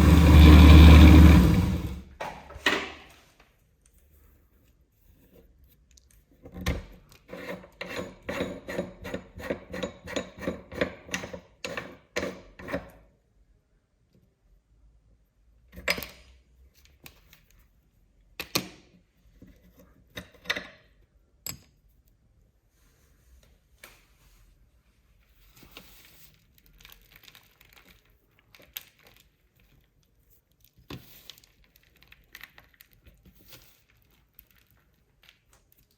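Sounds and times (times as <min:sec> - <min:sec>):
meat grinder crunching candies: 0:00.0 - 0:02.0.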